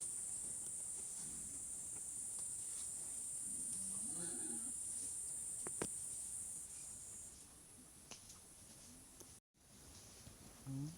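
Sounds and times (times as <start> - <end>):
farm animal call: 3.7 - 4.8.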